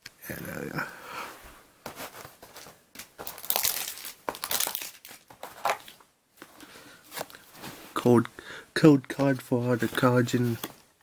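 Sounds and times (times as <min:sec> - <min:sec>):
packaging crinkling: 0:02.4 - 0:06.0.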